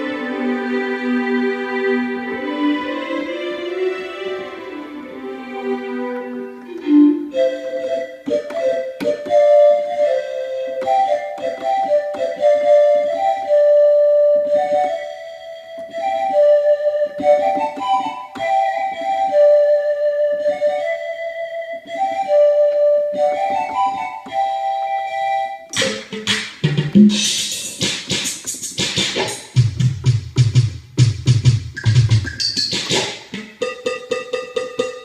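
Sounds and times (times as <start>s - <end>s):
synthesizer melody: 0.0s - 20.8s
noisy percussive hits: 25.7s - 35.0s.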